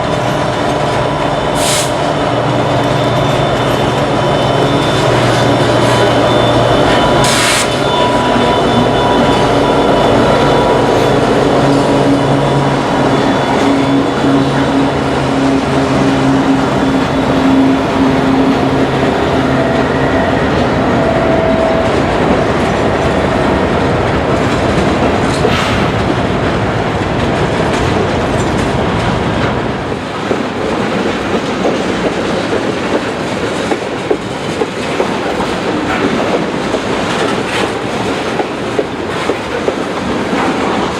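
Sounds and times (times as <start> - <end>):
diesel locomotive passing: 0.0 - 40.9
freight cars rolling: 0.0 - 40.9.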